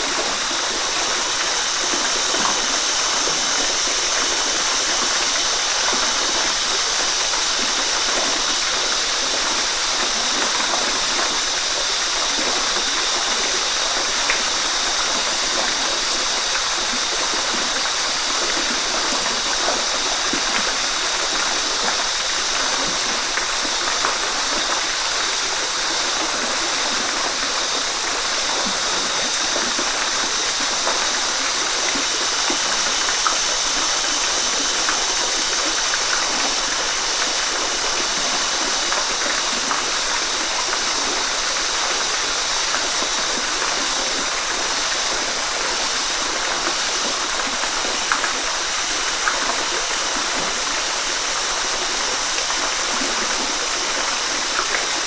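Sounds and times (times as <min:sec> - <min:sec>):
waterfall roaring: 0:00.0 - 0:55.0.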